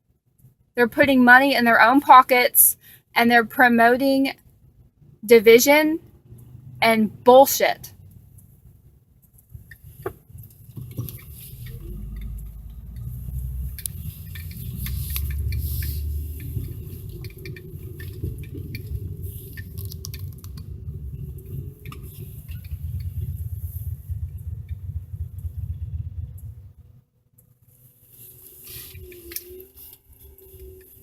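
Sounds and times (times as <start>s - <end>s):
recording device handling noise: 8.0s - 26.7s, 27.3s - 31.0s
low rumble: 10.3s - 31.0s.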